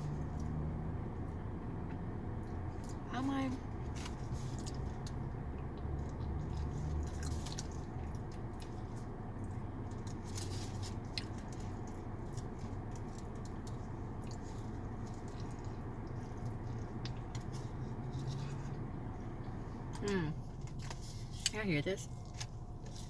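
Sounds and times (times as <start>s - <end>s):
low hum: 0.0s - 23.0s
wet chewing: 3.8s - 21.5s.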